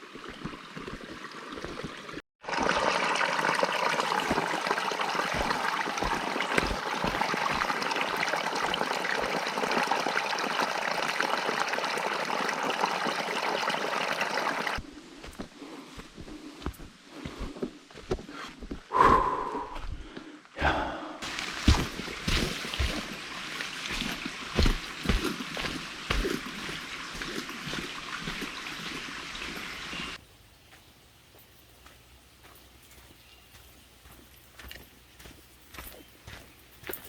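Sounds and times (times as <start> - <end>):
water rushing over rocks: 0.0 - 14.8, 21.2 - 30.2
soft footsteps: 14.8 - 18.9, 21.3 - 29.6.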